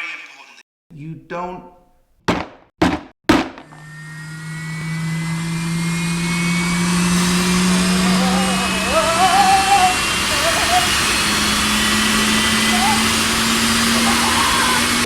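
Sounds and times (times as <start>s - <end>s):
sharp knocks: 2.3s - 3.8s
vacuum cleaner motor humming: 3.4s - 15.0s
wavering high tone: 7.2s - 14.6s.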